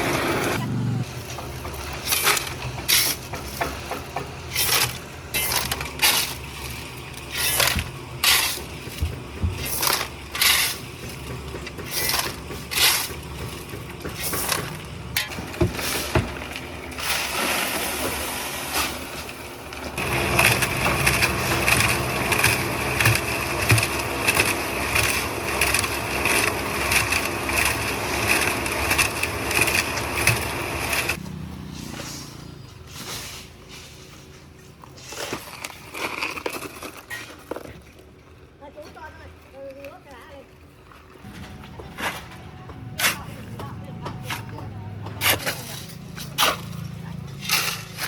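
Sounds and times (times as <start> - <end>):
scraping wet concrete: 0.0 - 38.1, 41.2 - 48.0
gritty gravel rattle: 18.9 - 31.2, 35.0 - 37.8.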